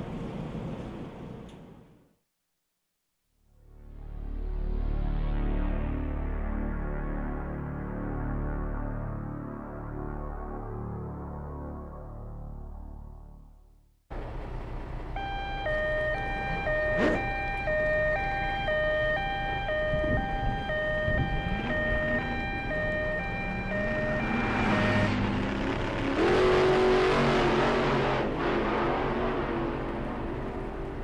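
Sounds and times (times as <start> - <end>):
traffic noise: 0.0 - 1.9, 14.1 - 31.0
two-tone emergency siren: 15.1 - 27.8.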